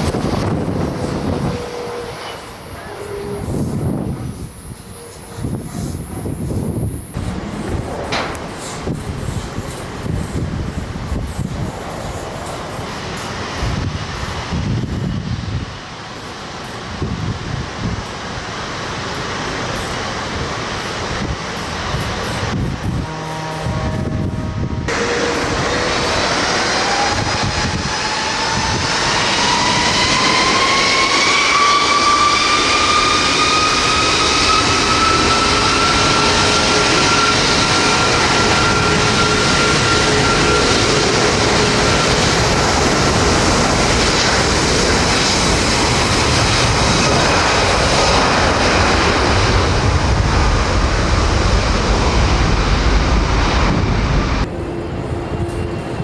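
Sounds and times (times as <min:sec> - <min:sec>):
jet engine rumble: 0:00.0 - 0:56.0
jet engine whine: 0:00.0 - 0:56.0.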